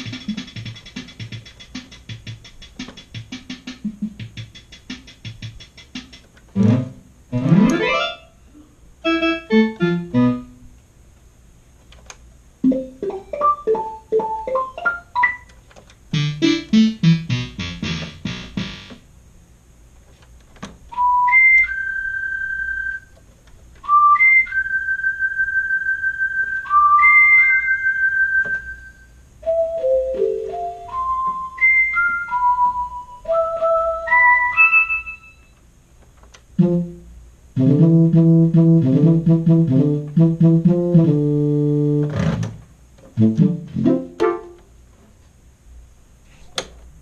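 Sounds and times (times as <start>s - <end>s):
portable keyboard through amplifier: 0.0s - 8.1s, 13.4s - 19.0s, 37.6s - 44.6s.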